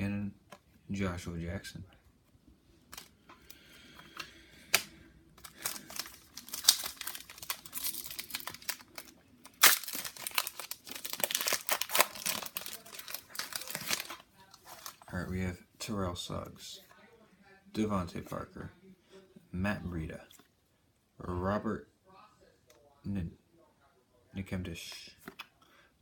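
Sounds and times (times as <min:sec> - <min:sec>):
plastic wrapper tearing and crinkling: 0:04.7 - 0:15.1.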